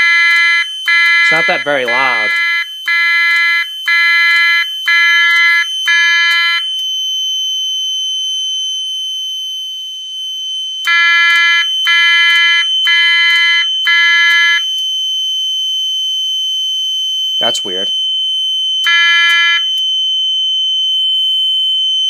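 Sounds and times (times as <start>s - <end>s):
fire alarm pulsing multi-tone signal: 0.0s - 22.0s
steady high-pitched tone: 1.2s - 2.4s.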